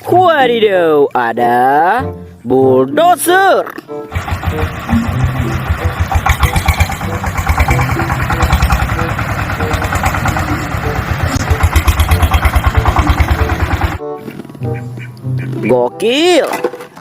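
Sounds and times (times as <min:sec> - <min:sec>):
bulldozer diesel engine chugging: 0:04.1 - 0:14.0.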